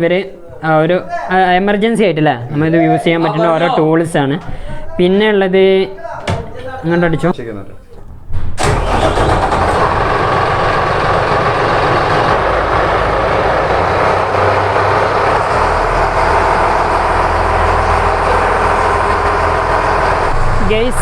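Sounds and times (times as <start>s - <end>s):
boat diesel engine drone: 8.6s - 21.0s.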